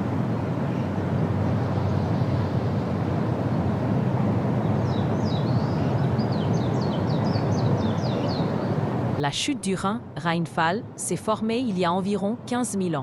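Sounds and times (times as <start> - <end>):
small bird chirping: 4.8 - 8.7.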